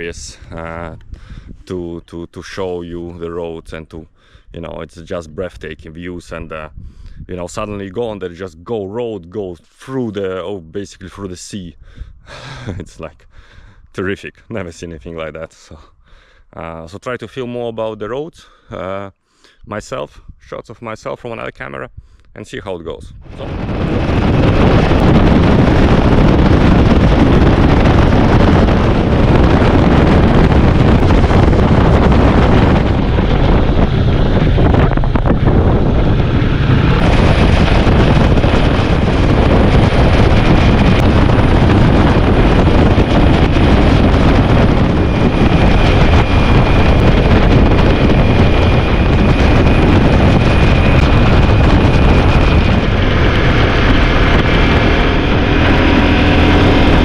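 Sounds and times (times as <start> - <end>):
wind noise on microphone: 0.0 - 57.0
motorcycle riding: 23.3 - 57.0.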